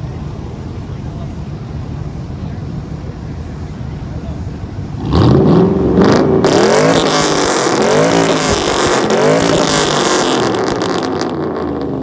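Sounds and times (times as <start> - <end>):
car engine revving: 4.8 - 12.0.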